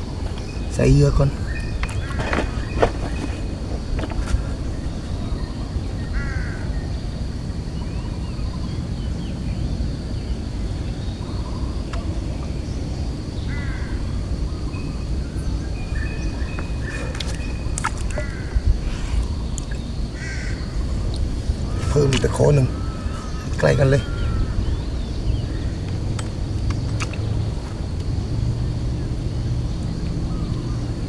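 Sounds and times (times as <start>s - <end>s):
crows cawing: 6.1s - 6.7s, 13.5s - 14.0s, 18.1s - 18.6s, 20.2s - 20.8s, 21.7s - 24.9s
steady low rumble: 6.7s - 31.0s.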